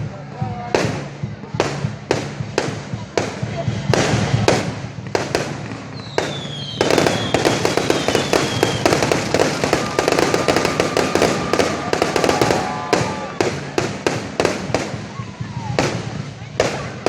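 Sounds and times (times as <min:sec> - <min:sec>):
firework bangs: 0:00.7 - 0:17.0
firework crackle: 0:00.7 - 0:17.0
falling firework whistle: 0:05.8 - 0:13.8.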